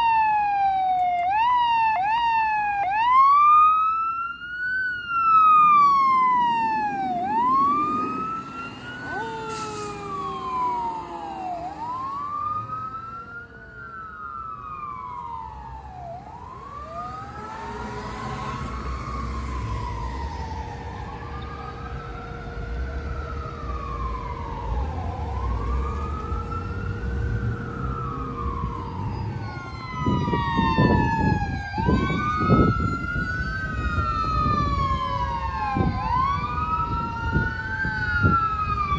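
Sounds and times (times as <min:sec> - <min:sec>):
lower siren tone sliding down: 0:00.0 - 0:38.9
siren wailing: 0:00.0 - 0:38.9
truck engine rumble: 0:00.1 - 0:28.8.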